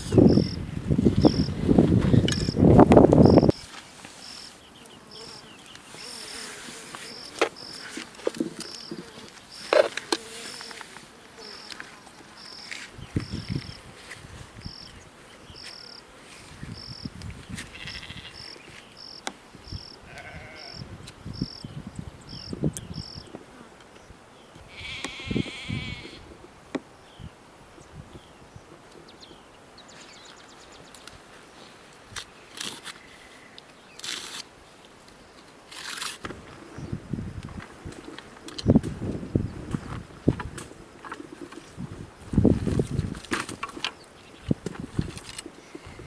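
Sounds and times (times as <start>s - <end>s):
insect chirping: 0.0s - 13.9s, 14.6s - 23.3s.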